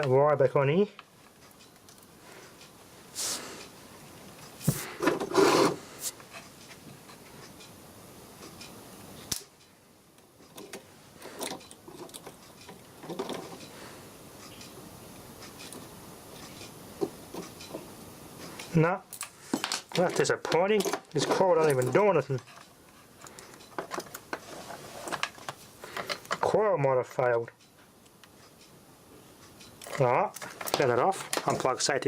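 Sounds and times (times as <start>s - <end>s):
hands handling small parts: 18.6s - 26.5s.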